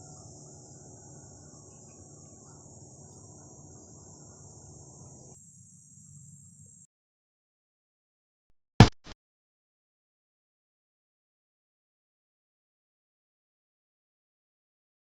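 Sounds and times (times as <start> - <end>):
insects chirring: 0.0 - 6.9.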